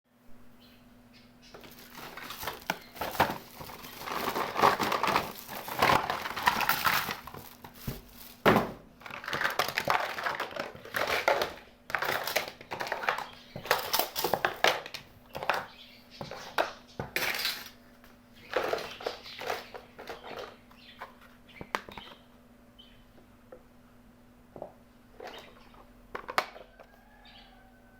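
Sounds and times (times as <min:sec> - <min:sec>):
plastic packaging crinkling: 0:01.5 - 0:15.0.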